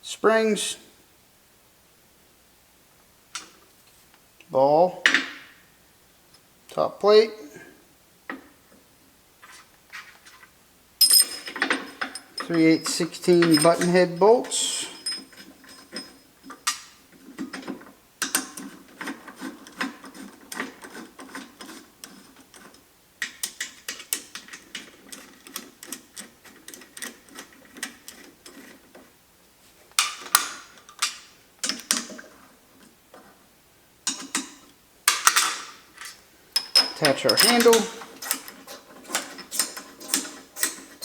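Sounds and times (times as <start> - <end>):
metal clanks: 11.0 - 16.9, 34.1 - 41.0.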